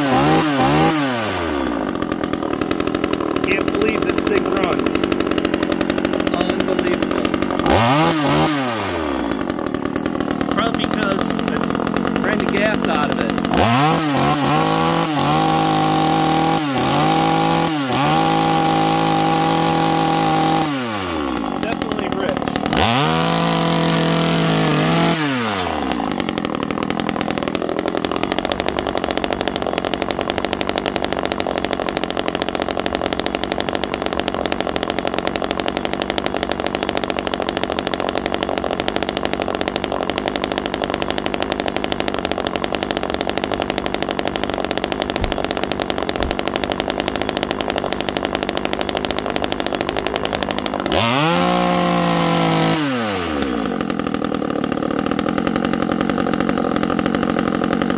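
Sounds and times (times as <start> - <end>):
small chainsaw engine revving and idling: 0.0 - 57.9.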